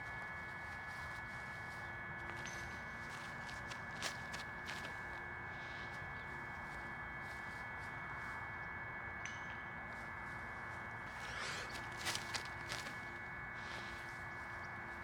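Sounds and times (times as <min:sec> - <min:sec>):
short rustle: 0:11.1 - 0:13.9.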